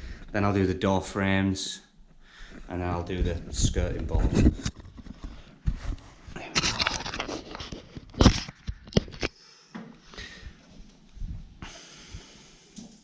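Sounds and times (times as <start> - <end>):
rustling and scraping: 2.1 - 11.6.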